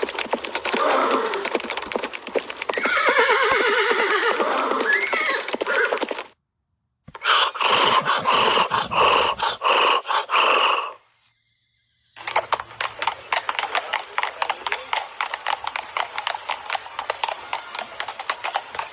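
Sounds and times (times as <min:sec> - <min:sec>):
horse whinnying: 0:00.0 - 0:01.8, 0:02.7 - 0:06.2, 0:07.1 - 0:11.0
hoofbeats clip-clopping: 0:00.0 - 0:06.4, 0:07.1 - 0:11.0, 0:12.2 - 0:18.9.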